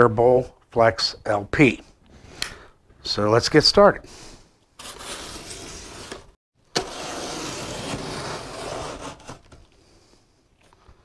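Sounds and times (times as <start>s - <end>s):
cardboard box rasping open: 4.8s - 9.6s.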